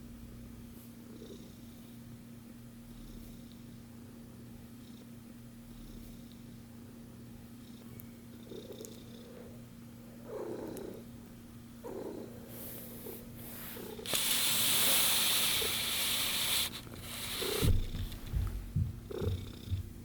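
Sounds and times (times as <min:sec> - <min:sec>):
kitten purring softly: 0:00.8 - 0:02.2, 0:02.8 - 0:20.0
loud hissing: 0:13.4 - 0:17.8.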